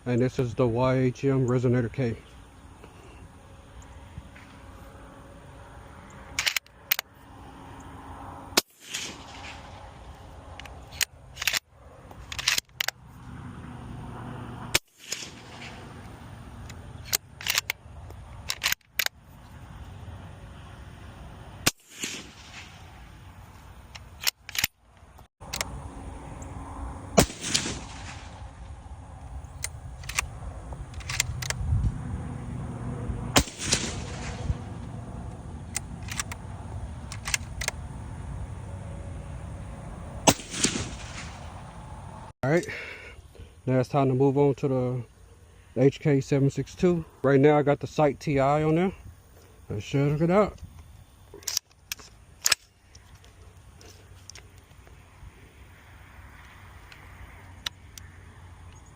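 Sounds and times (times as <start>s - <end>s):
rifle bolt clicks: 6.4s - 7.1s, 10.6s - 11.6s, 12.2s - 13.0s, 16.6s - 17.8s, 18.4s - 19.1s, 23.9s - 24.7s, 25.5s - 25.7s, 29.5s - 31.6s, 35.7s - 36.4s, 37.1s - 37.8s
suppressed rifle shots: 8.6s - 9.9s, 15.0s - 16.0s, 21.6s - 22.9s, 27.2s - 28.6s, 33.4s - 35.0s, 40.2s - 41.6s.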